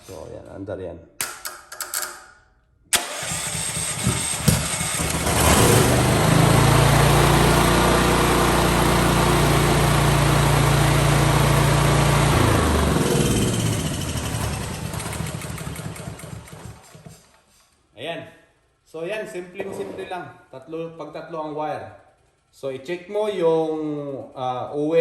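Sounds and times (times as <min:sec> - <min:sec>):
generator engine running: 0:03.0 - 0:17.1.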